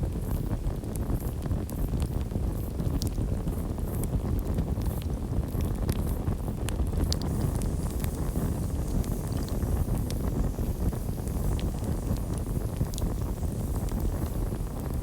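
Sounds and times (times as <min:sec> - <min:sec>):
low rush of flames: 0:01.4 - 0:15.0
burning wood crackling: 0:05.5 - 0:15.0.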